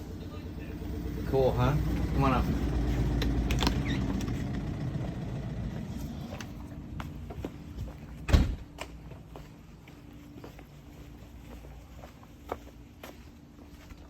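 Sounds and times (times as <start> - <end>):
loud thump: 8.3 - 8.6.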